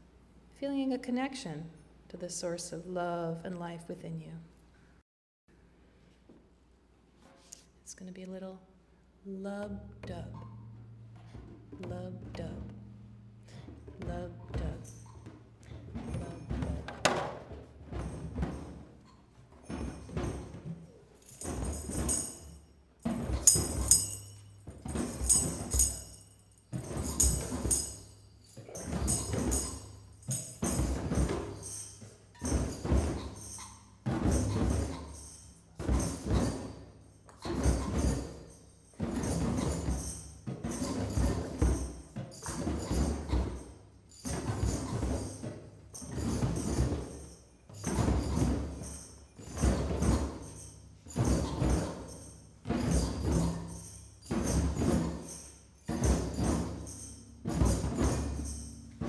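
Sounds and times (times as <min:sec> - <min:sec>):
metallic jingles: 0:10.1 - 0:59.0
hand drums heartbeat rhythm: 0:19.6 - 0:38.4, 0:39.0 - 0:59.0.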